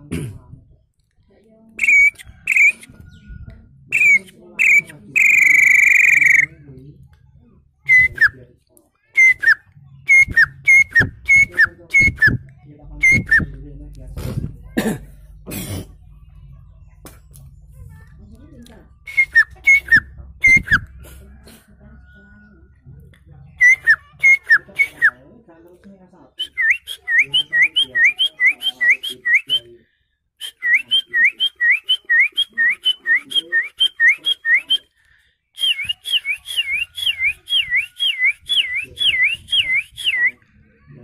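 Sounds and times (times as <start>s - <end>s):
man whistling birdsong: 4.0s - 6.5s, 26.4s - 29.6s, 35.6s - 40.4s.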